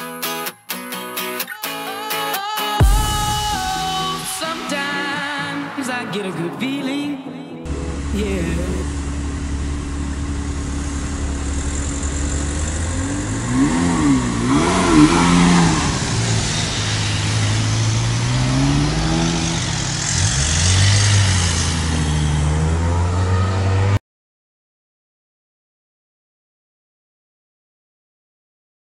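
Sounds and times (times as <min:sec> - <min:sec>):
car engine idling and revving: 0:07.7 - 0:24.0.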